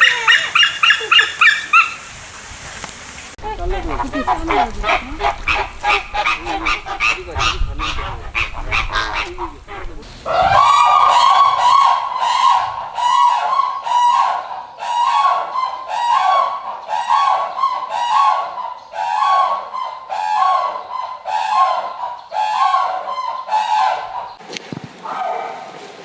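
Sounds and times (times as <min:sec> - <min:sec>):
goose-like honking: 0:03.4 - 0:14.1.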